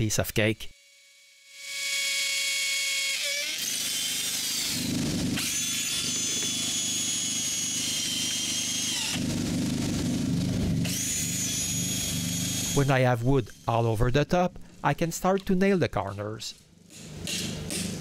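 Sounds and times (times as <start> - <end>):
power drill drilling into concrete: 1.6 - 9.3, 10.8 - 12.9.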